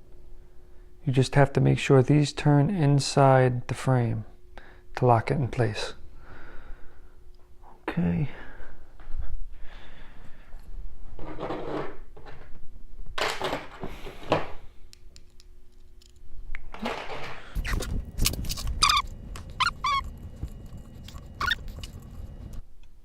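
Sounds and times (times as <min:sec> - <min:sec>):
short squeaks: 0:17.5 - 0:20.2, 0:21.0 - 0:22.5.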